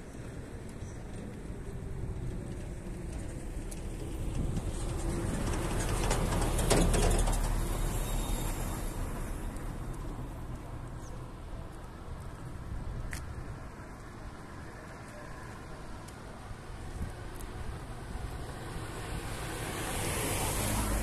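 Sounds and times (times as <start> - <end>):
vehicle passing by: 3.4 - 11.1, 17.9 - 21.0.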